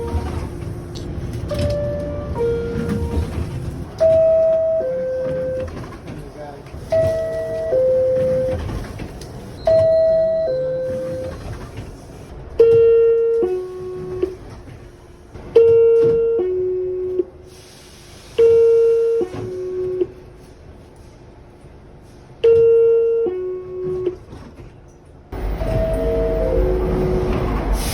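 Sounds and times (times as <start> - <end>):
door chime ding-dong: 25.6 - 26.8.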